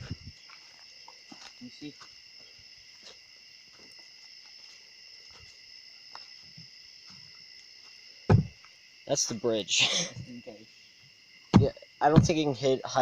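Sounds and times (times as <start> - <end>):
high-pitched insect chorus: 0.0 - 13.0.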